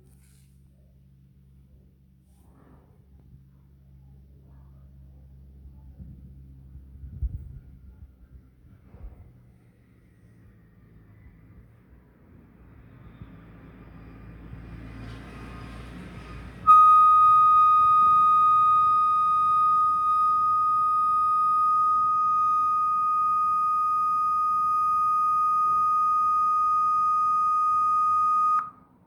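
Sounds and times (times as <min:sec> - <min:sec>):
laptop high-pitched tone: 0:16.7 - 0:28.8.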